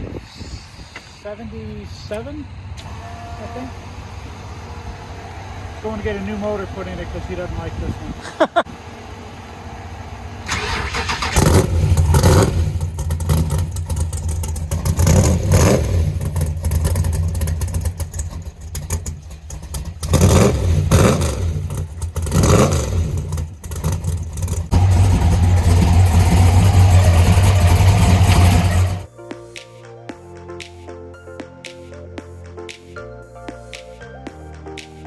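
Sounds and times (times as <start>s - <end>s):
car engine revving: 8.8s - 29.1s.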